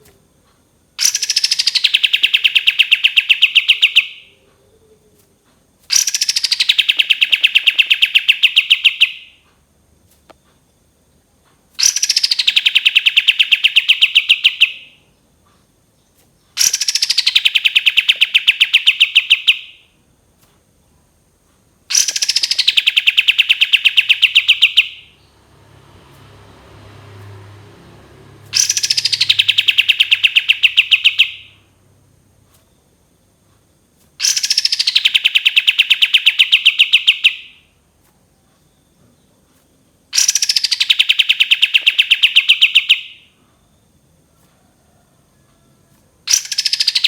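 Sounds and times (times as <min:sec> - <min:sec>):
bird singing trilled phrase: 0:28.6 - 0:31.5.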